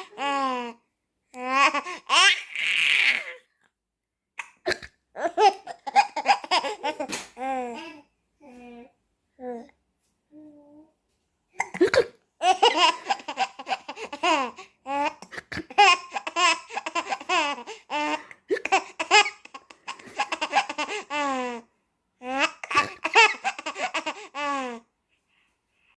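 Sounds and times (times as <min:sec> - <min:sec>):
baby laughing: 0:04.4 - 0:08.0, 0:11.6 - 0:21.6, 0:22.2 - 0:24.8.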